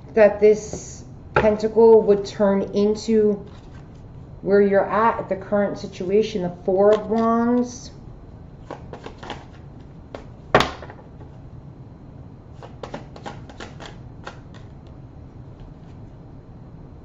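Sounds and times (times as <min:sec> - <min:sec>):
cards clicking and tapping: 0:06.9 - 0:07.7, 0:08.6 - 0:11.3, 0:12.6 - 0:14.7
card snap: 0:12.6 - 0:14.7.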